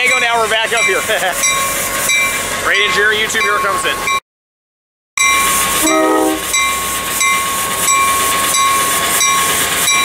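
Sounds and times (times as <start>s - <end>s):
train wheels clacking: 5.2s - 10.0s
train horn toot: 5.8s - 6.5s.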